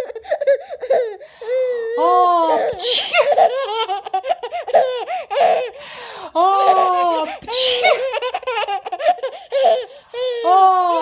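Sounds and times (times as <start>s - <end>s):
baby laughing: 2.0s - 5.8s, 6.6s - 11.0s
woman sneezing: 2.7s - 3.3s, 7.5s - 8.1s.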